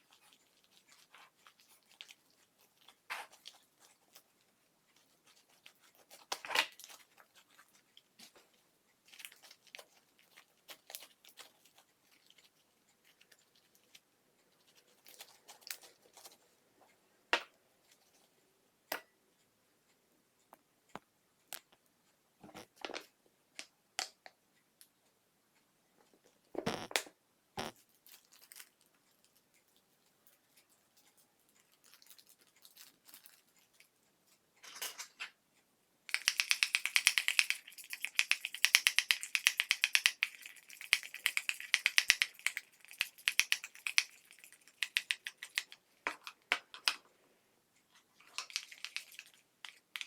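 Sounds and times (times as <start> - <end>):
crinkling and rustling: 0.0 - 17.0, 21.0 - 24.3, 26.0 - 35.4, 47.8 - 50.0.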